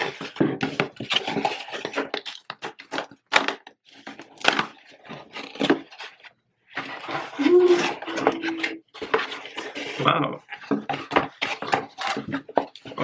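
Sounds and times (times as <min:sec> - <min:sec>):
sharp cardboard cracks: 0:00.6 - 0:06.0.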